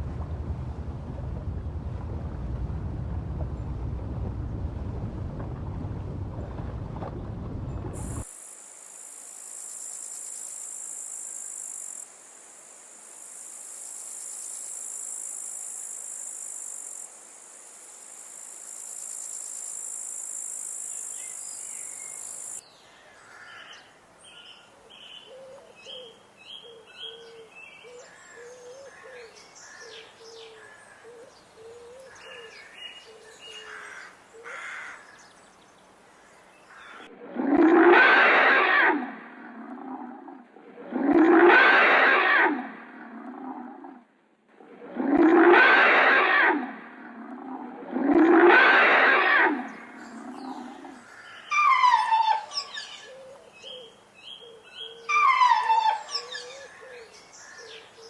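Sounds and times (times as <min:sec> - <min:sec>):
cicadas buzzing: 0:08.0 - 0:22.6
bird calling: 0:50.2 - 0:58.0.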